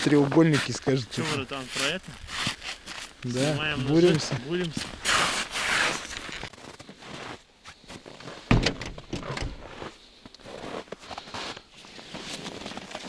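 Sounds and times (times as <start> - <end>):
crunching and scraping on snowy ice: 0.0 - 8.5, 9.6 - 13.0
sharp thunk: 8.5 - 9.5.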